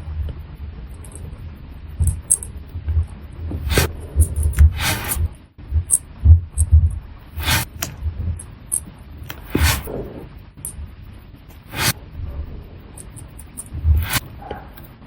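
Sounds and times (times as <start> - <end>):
scraping or brushing strokes: 3.6 - 5.4, 7.4 - 7.9, 9.3 - 10.0, 11.5 - 12.0, 13.4 - 14.9.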